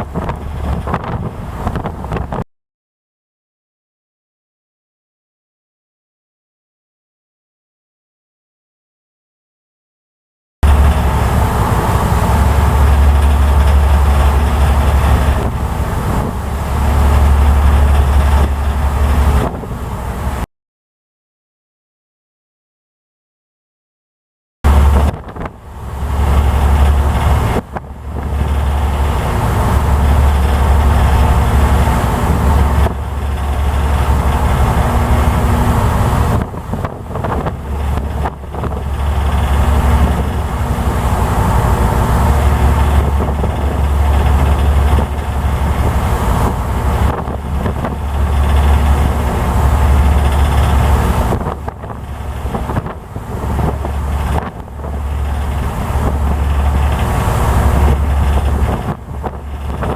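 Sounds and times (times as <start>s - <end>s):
wind buffeting microphone: 0.0s - 2.4s, 10.6s - 20.4s, 24.7s - 59.9s
ferry engines droning: 10.6s - 20.4s, 24.7s - 59.9s.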